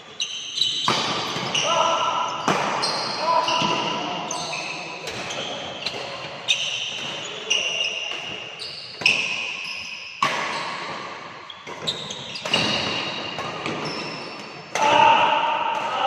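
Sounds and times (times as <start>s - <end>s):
shoe squeaks: 0.0s - 10.8s, 11.4s - 14.4s
racket hitting shuttlecock: 0.6s - 1.6s, 2.4s - 2.9s, 5.0s - 9.6s, 10.2s - 16.0s.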